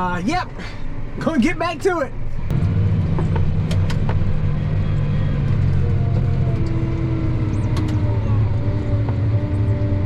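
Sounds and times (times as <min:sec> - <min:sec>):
tractor engine running: 0:02.1 - 0:10.0.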